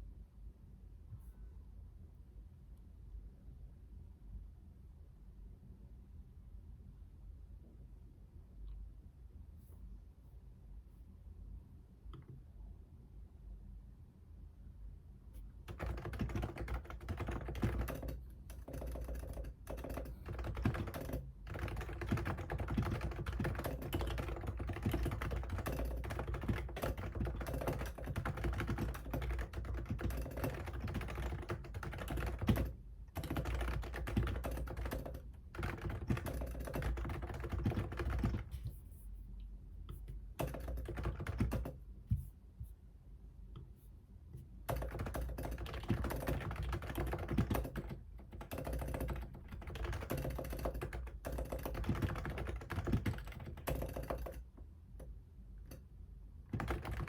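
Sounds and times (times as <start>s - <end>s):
keyboard typing: 15.7s - 38.8s, 39.9s - 42.2s, 44.7s - 54.5s, 56.5s - 57.0s.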